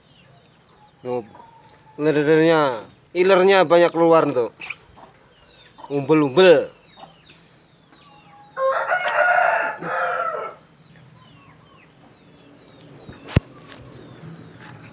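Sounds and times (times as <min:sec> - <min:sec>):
rooster crowing: 0:08.5 - 0:10.7.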